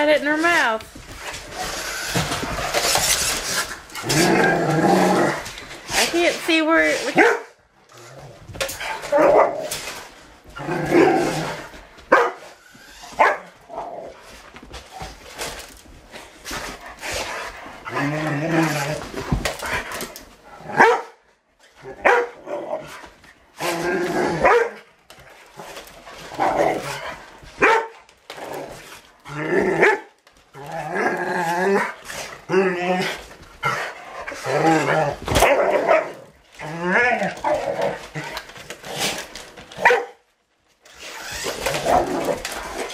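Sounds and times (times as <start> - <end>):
dog barking and growling: 0.3 - 14.3, 16.6 - 40.3, 41.0 - 42.9
dog barking: 7.2 - 7.6, 12.1 - 12.4, 13.2 - 13.5, 20.8 - 21.2, 22.0 - 22.4, 24.4 - 24.8, 27.6 - 27.9, 39.8 - 40.2.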